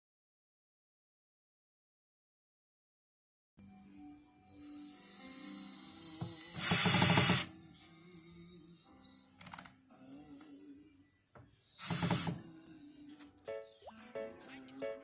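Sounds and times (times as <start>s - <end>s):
faint music: 3.6s - 15.0s.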